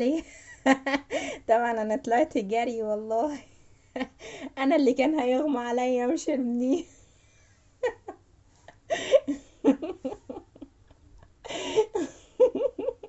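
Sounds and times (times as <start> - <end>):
woman laughing breathily: 0.2 - 1.5, 3.8 - 4.6, 7.0 - 13.0.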